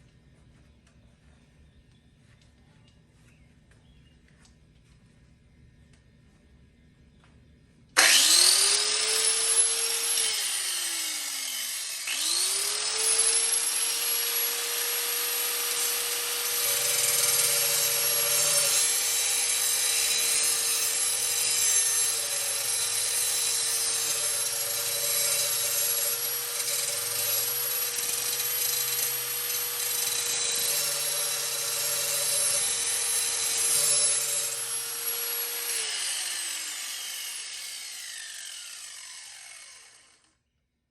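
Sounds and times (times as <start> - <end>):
grinder scraping metal blade: 8.0 - 39.8
angle grinder motor whining: 8.0 - 40.3.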